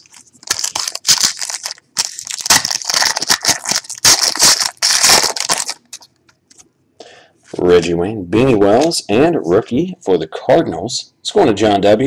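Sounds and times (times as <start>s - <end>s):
plastic wrapper crinkling: 0.0s - 6.6s.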